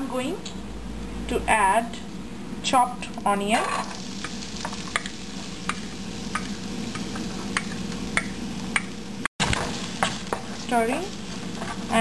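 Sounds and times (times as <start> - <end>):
onion sizzling in hot oil: 3.0 - 12.0.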